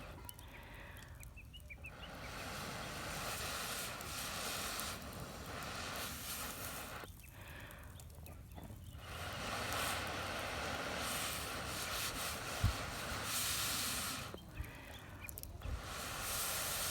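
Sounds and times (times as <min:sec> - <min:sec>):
gusting wind on microphone: 0:01.8 - 0:07.1, 0:09.0 - 0:14.8, 0:15.6 - 0:16.9.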